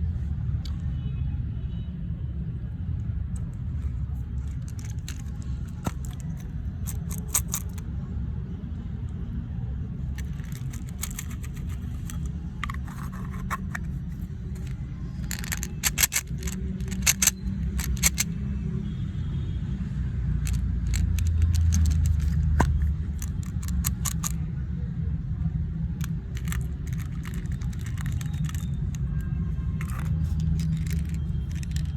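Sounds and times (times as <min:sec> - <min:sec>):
sharp clicks and rattles: 0:04.4 - 0:07.8, 0:10.2 - 0:18.4, 0:20.4 - 0:24.4, 0:26.0 - 0:31.9.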